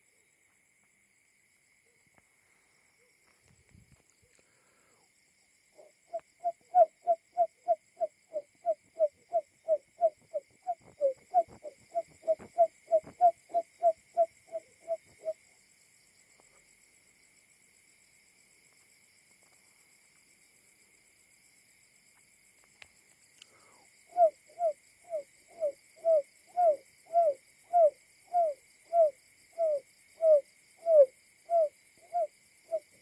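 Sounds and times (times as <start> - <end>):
bird hooting call: 5.8 - 15.4, 24.1 - 33.0.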